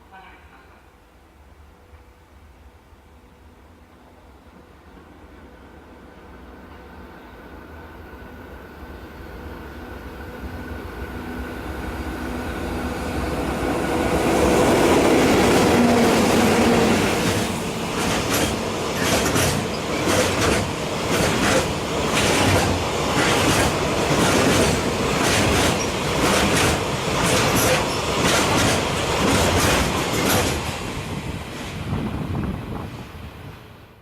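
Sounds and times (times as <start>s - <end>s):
train rumble: 7.8s - 33.8s
train wheels clacking on rails: 13.4s - 31.7s.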